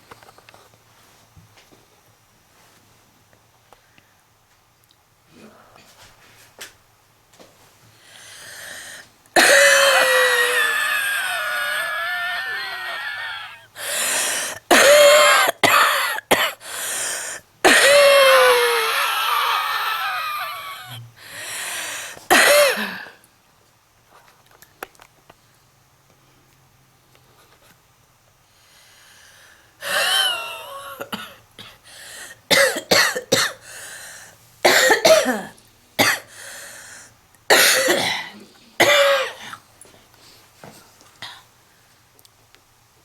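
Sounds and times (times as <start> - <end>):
faint breath: 8.0 - 9.1, 13.8 - 14.6, 16.6 - 17.4, 21.2 - 22.3, 28.5 - 29.9, 31.8 - 32.4, 33.6 - 34.4, 36.3 - 37.2
heavy wheezy coughing: 8.2 - 23.2, 29.8 - 39.7.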